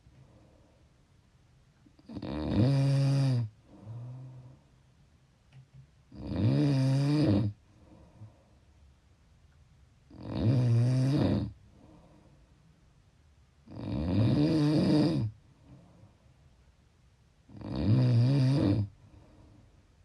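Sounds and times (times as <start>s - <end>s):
loud snoring: 2.0s - 4.3s, 6.1s - 7.6s, 10.1s - 11.6s, 13.7s - 15.4s, 17.5s - 18.9s.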